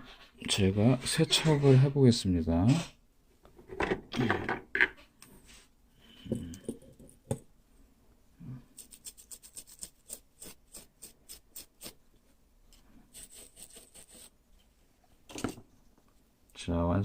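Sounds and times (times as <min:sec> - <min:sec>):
brush scrubbing circuit board: 0:08.8 - 0:12.0, 0:13.1 - 0:14.4.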